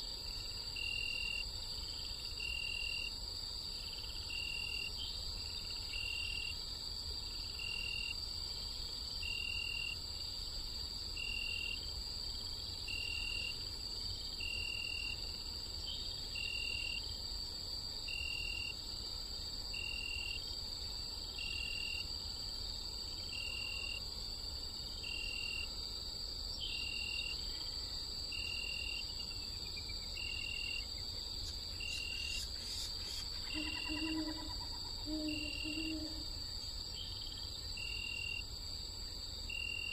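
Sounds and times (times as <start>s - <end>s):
crickets and insects chorus: 0.0s - 39.9s
owl hooting: 33.5s - 36.2s.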